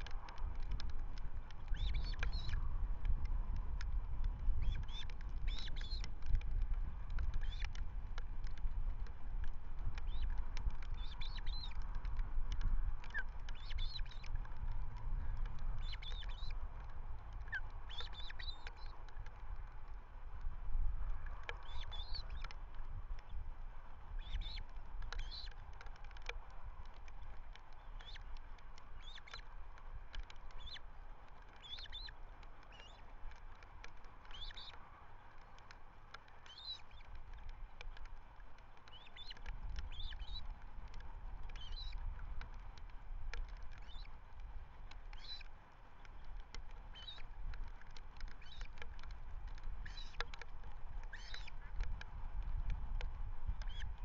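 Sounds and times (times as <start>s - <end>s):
wind rumble on microphone: 0.0s - 54.0s
ospreys chirping: 1.7s - 2.6s, 4.6s - 6.1s, 11.0s - 11.8s, 17.5s - 18.9s, 31.6s - 32.1s, 34.3s - 34.8s, 36.5s - 37.0s, 51.1s - 51.5s.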